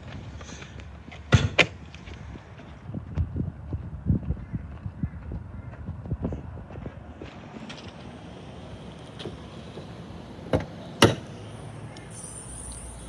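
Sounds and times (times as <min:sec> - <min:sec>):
car bonnet metallic clunks: 0:10.5 - 0:11.4.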